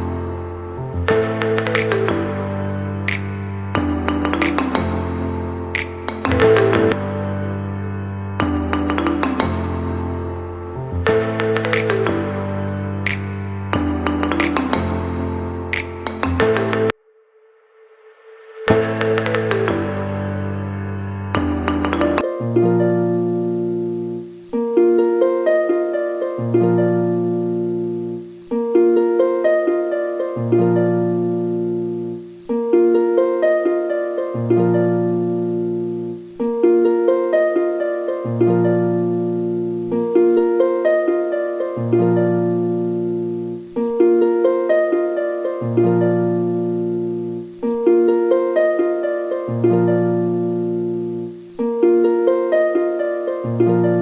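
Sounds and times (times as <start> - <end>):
harp-like plucked melody: 0.0 - 17.0, 18.6 - 54.0
low bass figure: 0.0 - 17.0.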